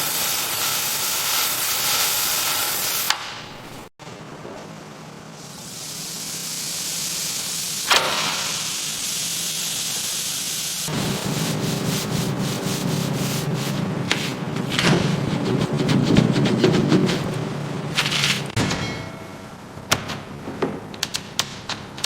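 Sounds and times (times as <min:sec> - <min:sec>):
sanding hiss: 0:00.0 - 0:03.2, 0:05.4 - 0:17.5
quick rasping strokes: 0:11.2 - 0:18.6.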